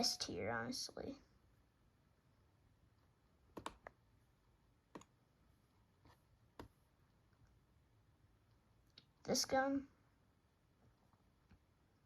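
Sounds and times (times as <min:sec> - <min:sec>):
computer mouse clicks: 0:03.5 - 0:04.0, 0:04.9 - 0:05.2, 0:06.1 - 0:06.8.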